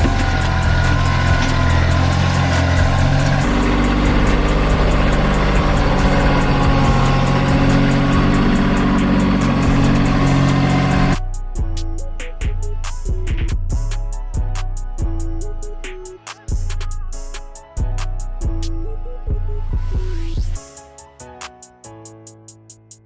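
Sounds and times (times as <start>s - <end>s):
tractor engine running: 0.0s - 11.2s
music: 0.0s - 23.0s.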